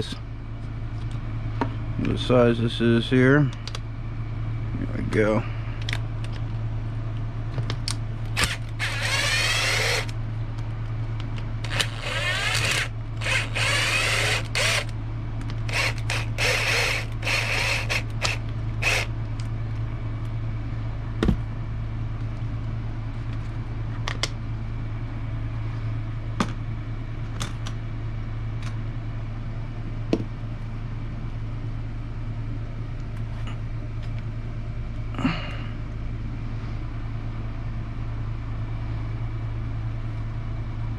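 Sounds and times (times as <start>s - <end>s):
steady low hum: 0.0s - 40.9s
power driver whirring: 8.3s - 10.2s, 11.6s - 15.0s, 15.6s - 19.1s.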